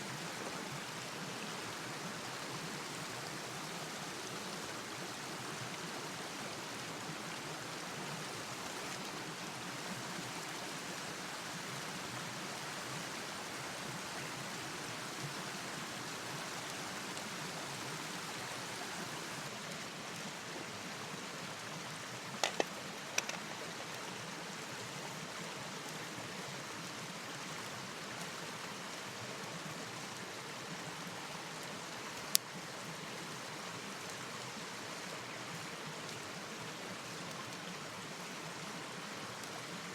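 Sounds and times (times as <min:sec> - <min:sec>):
rain and river water rushing: 0:00.0 - 0:39.9
sharp clicks: 0:22.4 - 0:23.5.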